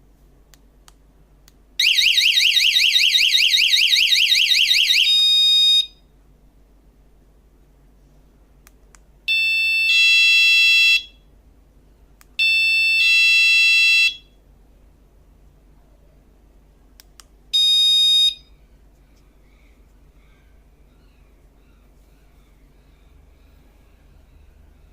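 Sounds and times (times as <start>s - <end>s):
door alarm electronic tones: 1.8s - 6.0s, 9.3s - 11.1s, 17.6s - 18.5s.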